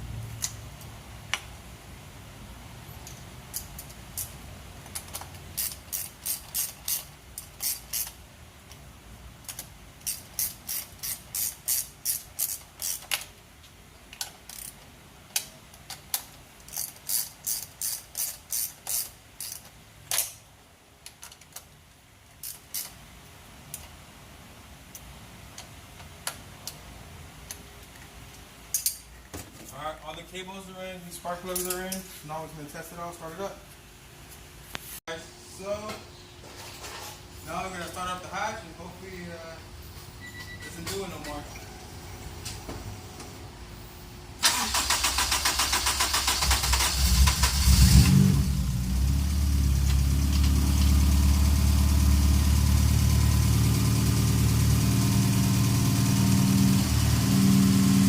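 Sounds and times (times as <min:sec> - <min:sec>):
hand ratchet clicking: 0:04.9 - 0:08.2, 0:09.5 - 0:13.3, 0:14.2 - 0:20.4, 0:22.4 - 0:23.0.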